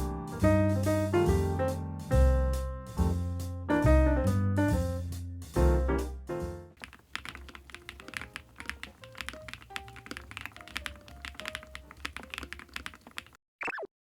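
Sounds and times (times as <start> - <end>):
mechanical keyboard typing: 6.8 - 13.4.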